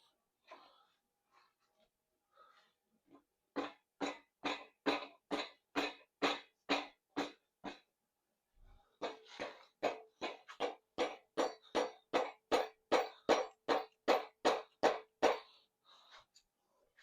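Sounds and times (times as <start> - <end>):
rubber mallet tapping metal: 9.0 - 15.5.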